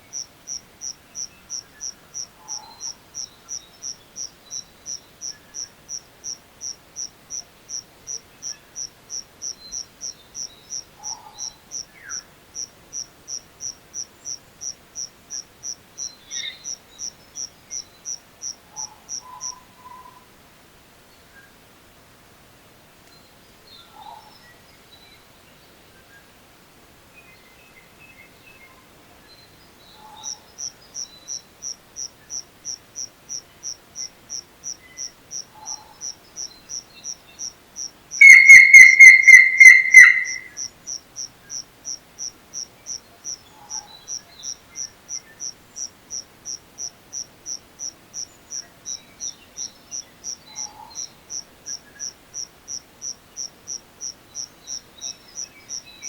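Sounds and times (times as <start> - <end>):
cricket chirping: 0.0 - 20.2, 29.9 - 56.0
faint bird chirps: 33.4 - 41.6.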